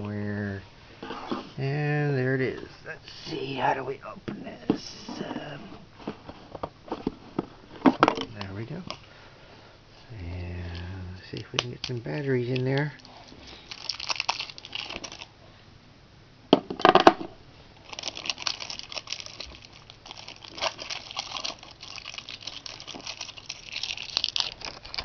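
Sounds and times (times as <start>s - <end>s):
plastic packaging crinkling: 10.7s - 15.3s, 17.8s - 25.0s.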